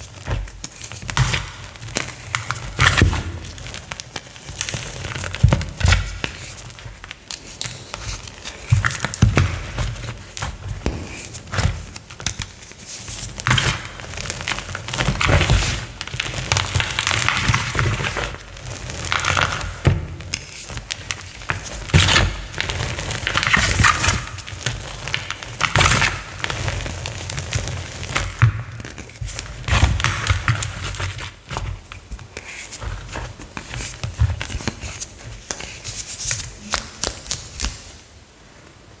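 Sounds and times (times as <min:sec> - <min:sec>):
chalk crunching and crumbling: 0:00.7 - 0:31.8
dull thuds: 0:10.8 - 0:12.0.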